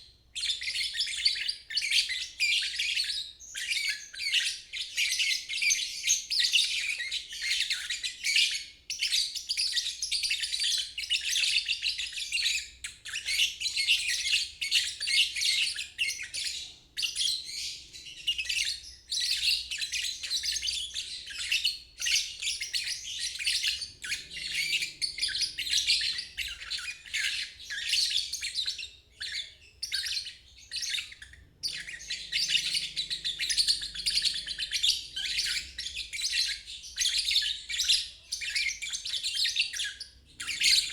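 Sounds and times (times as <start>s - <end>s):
lovebird twittering: 9.5s - 40.9s.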